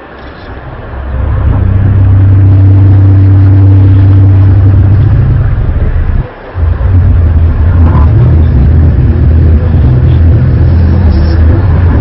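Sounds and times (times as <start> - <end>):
low droning groan: 0.0 - 12.0
higher tone: 0.5 - 12.0.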